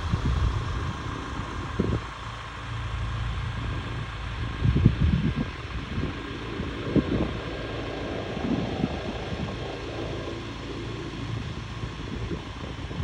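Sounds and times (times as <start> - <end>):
wind buffeting microphone: 0.0 - 2.4, 3.4 - 13.0
aircraft engines humming: 0.0 - 13.0.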